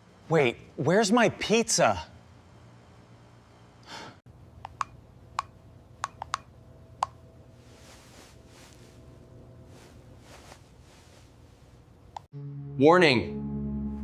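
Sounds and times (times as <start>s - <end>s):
faint steady hum: 0.0s - 12.3s
sharp clicks: 4.6s - 7.2s.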